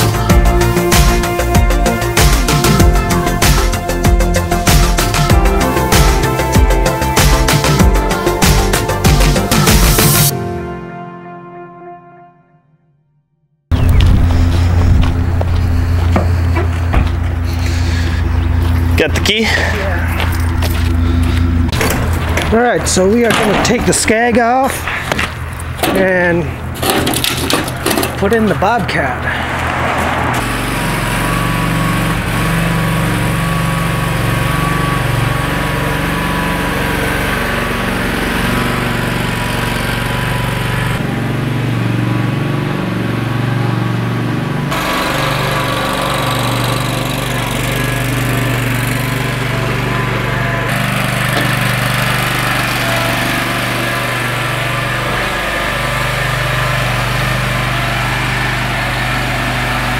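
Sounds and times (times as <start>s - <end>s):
riding lawn mower engine: 0.0s - 10.3s, 13.7s - 59.9s.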